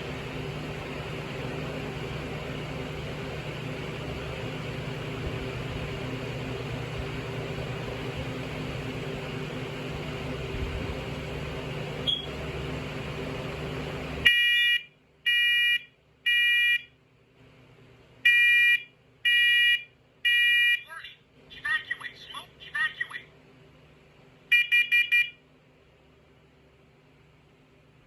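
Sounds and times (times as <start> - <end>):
steady background hum: 0.0 - 28.0
smoke alarm beeps: 12.0 - 12.3, 14.3 - 16.9, 18.2 - 20.9, 24.5 - 25.4.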